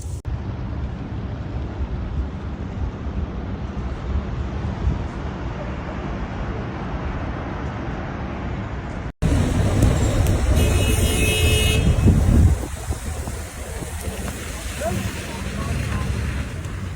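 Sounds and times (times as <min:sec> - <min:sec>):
city traffic rumble: 0:00.0 - 0:16.9
car horn: 0:09.4 - 0:12.6.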